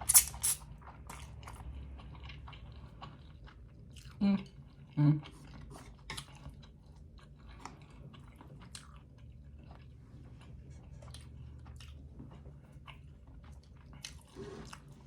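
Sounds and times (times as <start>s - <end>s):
close chewing with wet mouth sounds: 0.0s - 15.0s.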